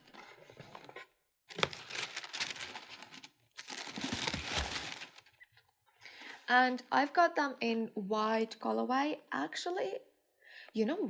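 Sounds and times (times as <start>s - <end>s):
packing paper crinkling: 1.5s - 5.3s.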